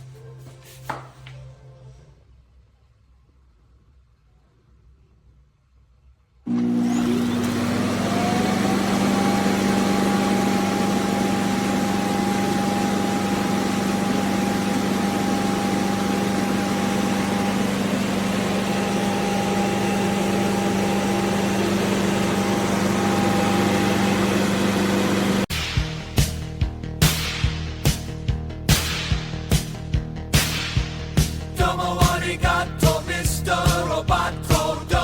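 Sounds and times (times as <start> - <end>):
vacuum motor whine: 6.5 - 25.5.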